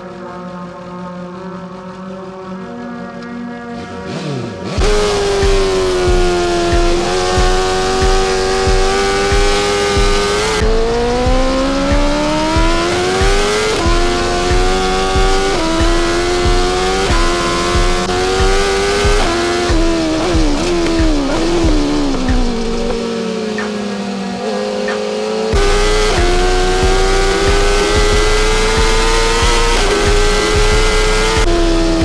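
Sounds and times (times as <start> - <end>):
motorcycle engine accelerating: 0.0 - 32.0
low steady thump: 4.8 - 23.0, 25.6 - 32.0.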